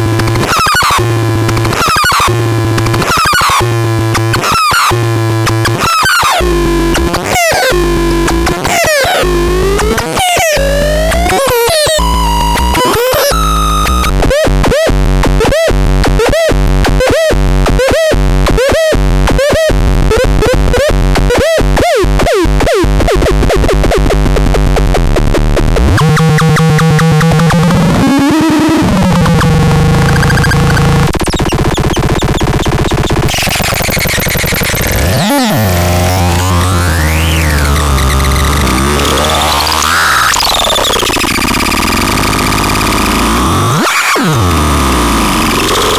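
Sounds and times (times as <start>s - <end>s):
synthesizer chirp: 28.2s - 35.8s.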